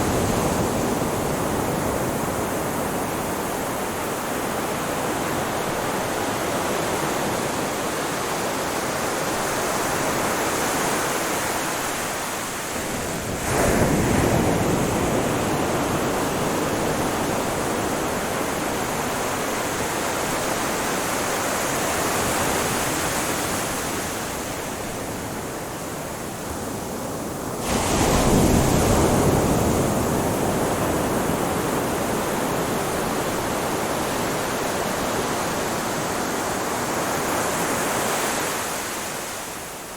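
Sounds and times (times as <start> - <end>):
ocean surf washing on shore: 0.0 - 39.9
waves breaking: 27.2 - 39.8.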